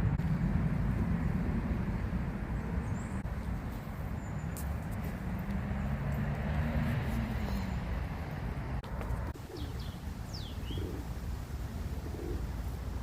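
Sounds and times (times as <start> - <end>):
low rumble of distant traffic: 0.0 - 13.0
pigeon cooing: 9.4 - 11.1, 11.9 - 12.5.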